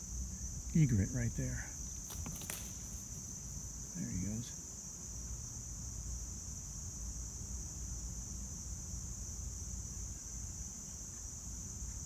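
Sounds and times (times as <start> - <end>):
crickets chorus: 0.0 - 12.0.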